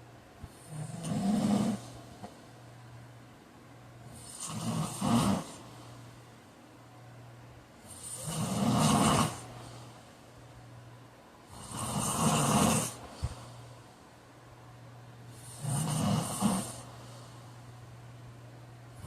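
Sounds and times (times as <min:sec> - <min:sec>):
man snoring: 0:00.6 - 0:02.0, 0:04.1 - 0:05.7, 0:07.9 - 0:09.5, 0:11.5 - 0:13.0, 0:15.4 - 0:16.9.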